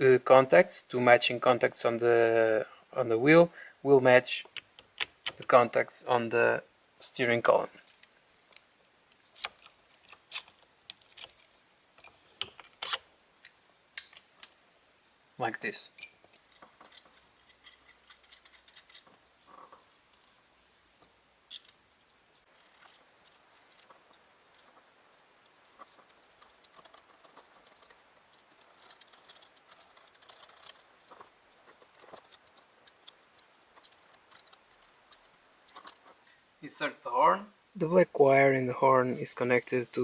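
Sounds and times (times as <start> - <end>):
small metal clicks and ticks: 7.7 - 14.6, 15.9 - 21.8, 22.4 - 36.6.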